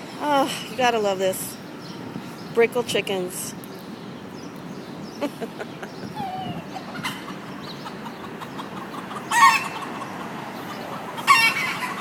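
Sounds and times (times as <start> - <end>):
steady background noise: 0.0 - 12.0
chickens clucking: 5.2 - 12.0
loud chicken call: 9.2 - 10.0, 11.1 - 12.0.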